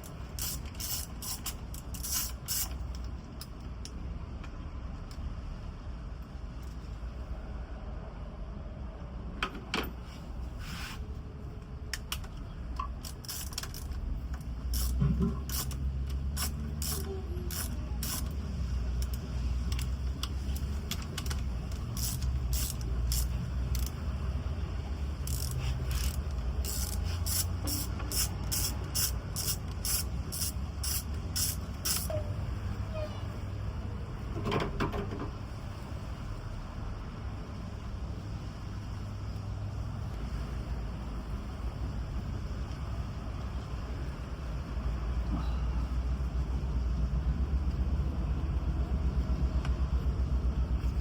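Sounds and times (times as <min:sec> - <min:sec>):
sharp mechanical clicks: 0:25.2 - 0:32.2.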